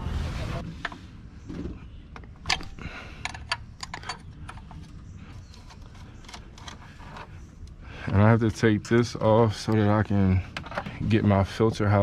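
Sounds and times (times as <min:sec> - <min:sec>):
hand tools clicking and tapping: 0:02.2 - 0:04.8.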